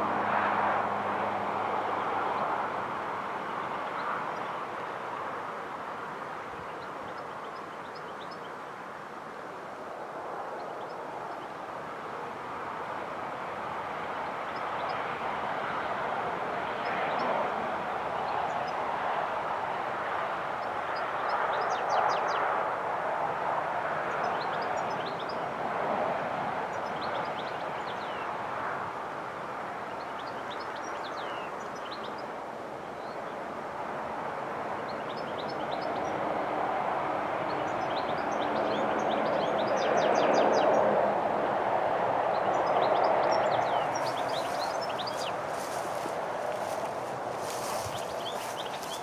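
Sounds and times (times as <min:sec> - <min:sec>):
songbirds chirping: 0:01.2 - 0:22.7, 0:24.0 - 0:25.6, 0:26.4 - 0:49.0
steady rushing noise: 0:41.7 - 0:49.0
small birds chirping: 0:42.4 - 0:49.0.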